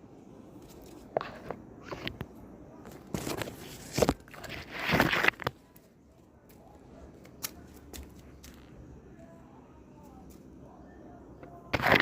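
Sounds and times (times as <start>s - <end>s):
crackling rustling noise: 0.5s - 8.9s, 11.7s - 12.0s.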